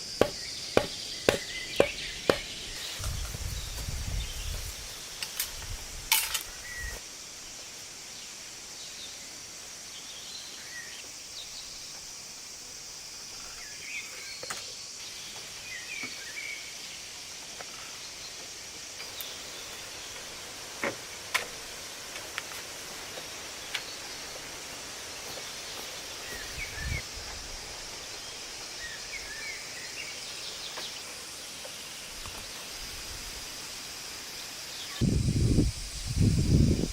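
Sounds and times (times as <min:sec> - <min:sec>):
steady high-pitched hiss: 0:00.0 - 0:36.9.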